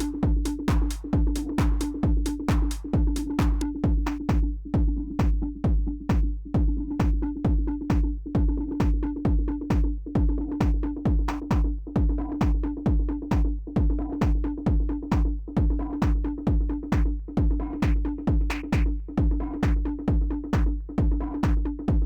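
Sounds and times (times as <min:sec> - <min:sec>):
hi-hat ticks: 0:00.0 - 0:04.3
drum machine kick drum: 0:00.0 - 0:22.0.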